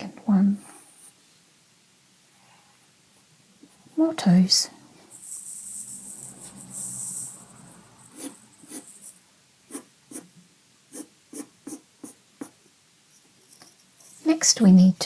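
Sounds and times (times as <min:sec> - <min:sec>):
pencil scratching on paper: 0:05.1 - 0:10.3, 0:10.9 - 0:12.6.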